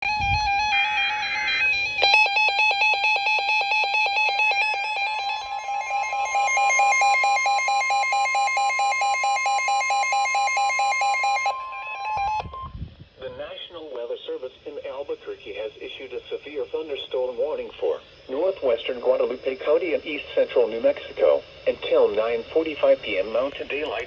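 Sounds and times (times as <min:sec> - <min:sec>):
pulsing electronic alert tone: 0:00.0 - 0:12.8
steady high tone: 0:00.0 - 0:13.8.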